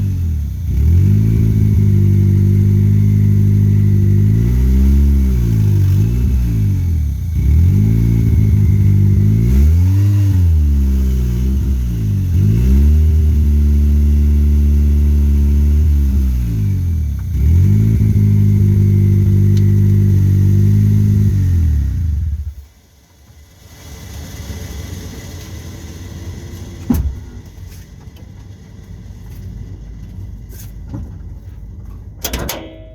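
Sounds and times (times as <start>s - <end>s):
turbocharged engine revving: 0.0s - 22.7s.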